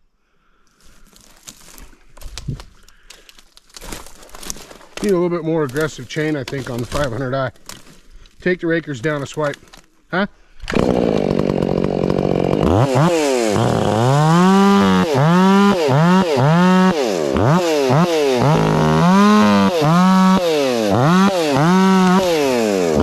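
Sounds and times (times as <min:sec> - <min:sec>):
chainsaw revving: 0:10.7 - 0:23.0.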